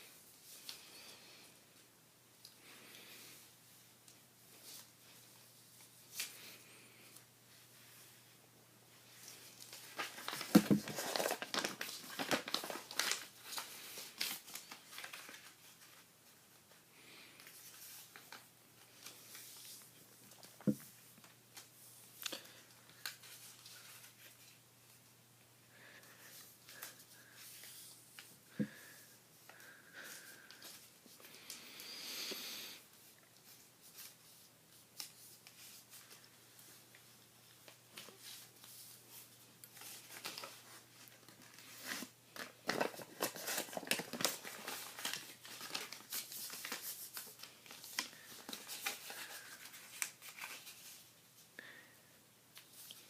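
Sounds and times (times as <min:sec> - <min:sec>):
paper folding and crinkling: 0:09.0 - 0:16.8, 0:17.4 - 0:25.0, 0:33.0 - 0:51.4.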